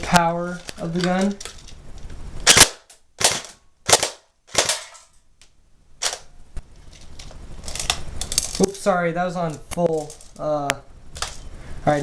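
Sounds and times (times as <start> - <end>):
airsoft rifle firing bursts: 2.5 - 4.8.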